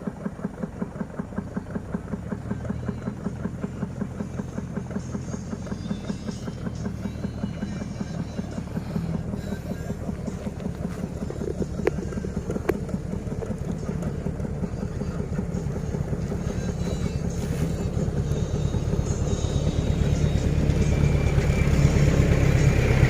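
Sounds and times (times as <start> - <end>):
engine running: 0.0 - 23.0.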